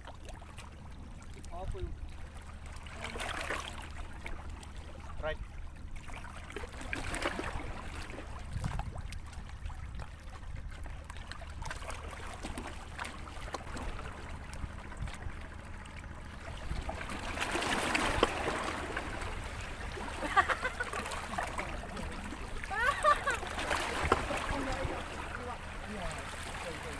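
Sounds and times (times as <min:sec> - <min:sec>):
water lapping at shoreline: 0:00.0 - 0:26.9
splashing water rush: 0:06.0 - 0:09.3, 0:11.1 - 0:26.9.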